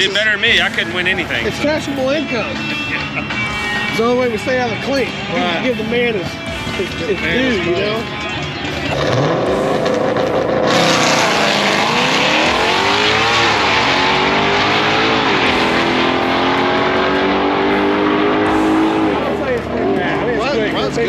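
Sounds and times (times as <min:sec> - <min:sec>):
drag car accelerating hard: 0:08.8 - 0:21.0.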